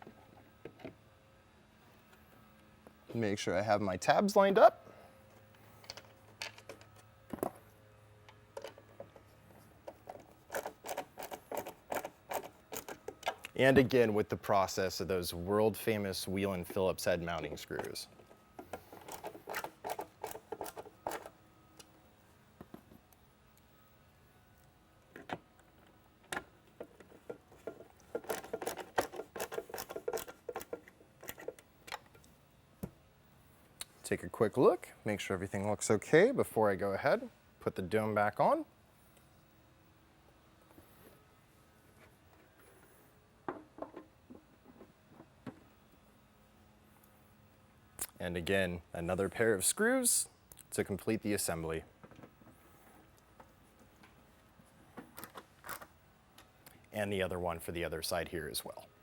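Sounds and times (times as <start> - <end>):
faint steady hum: 0.0 - 59.0
plastic parts clicking: 27.6 - 32.3.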